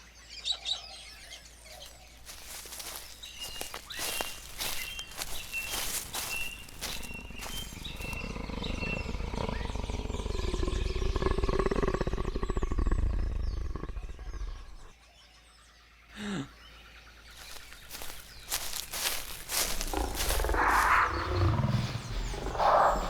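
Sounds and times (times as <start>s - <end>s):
animal growling and roaring: 7.6s - 14.9s, 19.8s - 23.0s.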